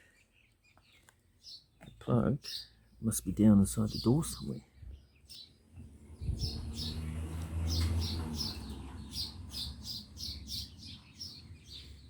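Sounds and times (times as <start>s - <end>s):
small bird chirping: 0.0s - 12.0s.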